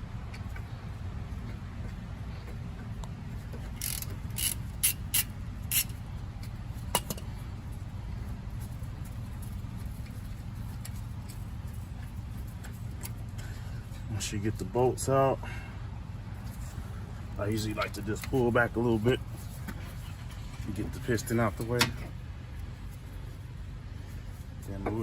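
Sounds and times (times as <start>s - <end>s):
steady low hum: 0.0s - 25.0s
wrench clicks and scrapes: 3.7s - 7.2s.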